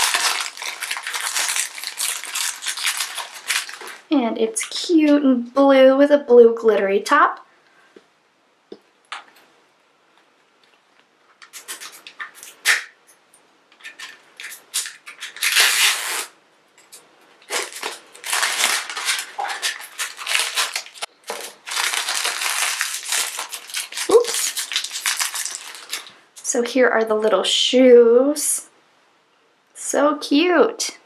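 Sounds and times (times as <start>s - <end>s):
plastic wrapper crinkling: 0.0s - 4.1s, 11.4s - 13.0s, 13.8s - 26.2s.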